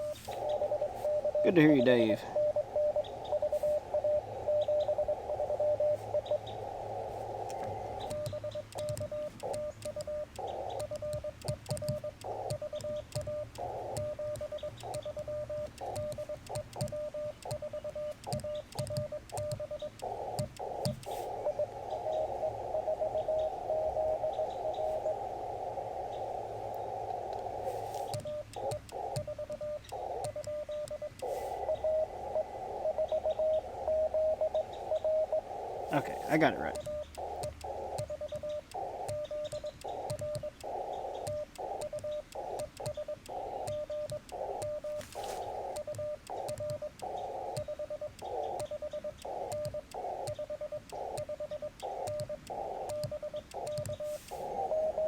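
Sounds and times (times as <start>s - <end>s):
morse code beeping: 0.0s - 6.4s, 7.3s - 24.9s, 27.4s - 55.0s
sidetone beeps: 0.0s - 6.7s, 7.3s - 25.6s, 26.7s - 55.0s
receiver hiss: 0.0s - 55.0s
morse paddle key clicks: 7.6s - 17.6s, 45.7s - 54.0s.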